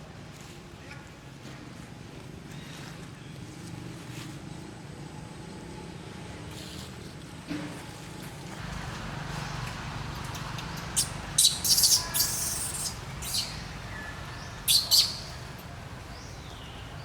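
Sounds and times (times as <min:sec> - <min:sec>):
steady low hum: 0:08.6 - 0:17.0
high chirping calls: 0:08.7 - 0:17.0.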